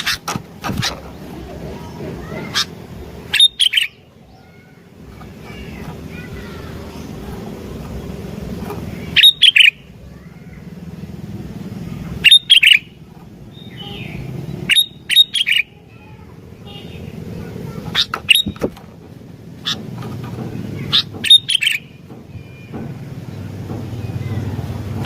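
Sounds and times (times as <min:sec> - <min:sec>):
bird chirping: 0:00.0 - 0:10.6, 0:11.6 - 0:18.8, 0:19.6 - 0:25.0
low background rumble: 0:00.0 - 0:15.1.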